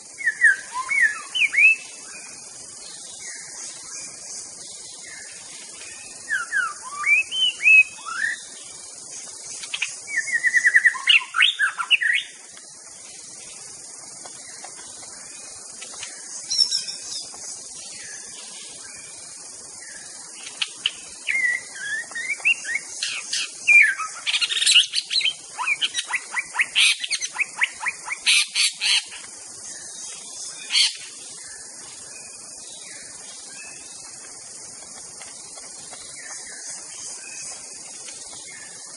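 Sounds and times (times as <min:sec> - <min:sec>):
insects hissing: 0:00.0 - 0:38.9
bird singing whistles and trills: 0:00.1 - 0:08.8, 0:09.5 - 0:12.4, 0:16.4 - 0:19.2, 0:19.8 - 0:34.1.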